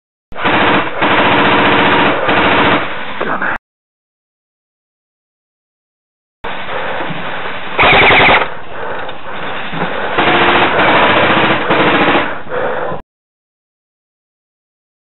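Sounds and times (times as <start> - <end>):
automatic gunfire bursts: 0.4 - 2.9, 7.8 - 8.5, 10.2 - 12.4
steady noisy background: 6.5 - 13.0.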